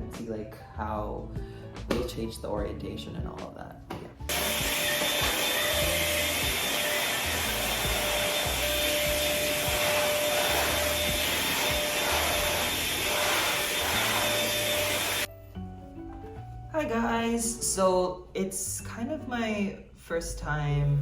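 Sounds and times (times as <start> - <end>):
soft background music: 0.0 - 21.0
appliance motor whining: 4.3 - 15.3.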